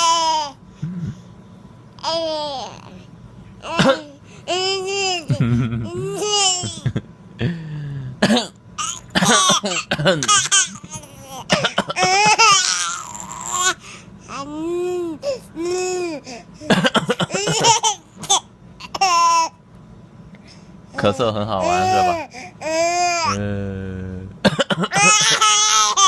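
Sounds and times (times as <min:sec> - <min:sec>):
baby giggling: 0:03.6 - 0:07.0, 0:08.8 - 0:13.7, 0:14.3 - 0:19.5, 0:24.9 - 0:26.0
adult coughing: 0:03.7 - 0:04.2, 0:08.2 - 0:10.9, 0:11.5 - 0:12.4, 0:16.6 - 0:17.9, 0:24.4 - 0:25.4.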